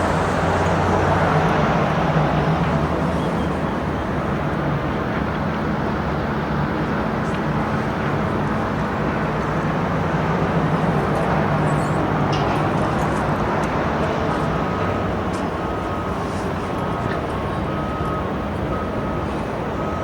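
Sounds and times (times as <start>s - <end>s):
vehicle backup alarm beeping: 14.3s - 20.0s.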